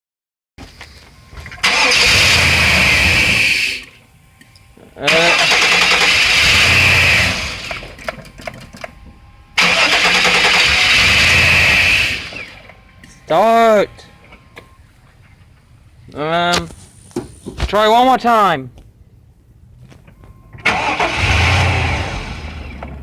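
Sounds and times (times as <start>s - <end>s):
engine cranking on starter: 1.3s - 4.0s, 5.0s - 9.0s, 9.6s - 12.8s, 20.5s - 23.0s.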